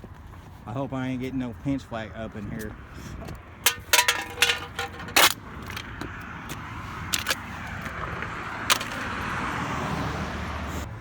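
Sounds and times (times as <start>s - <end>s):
sharp metallic clicks and rattles: 3.7s - 6.0s
car passing: 4.8s - 11.0s.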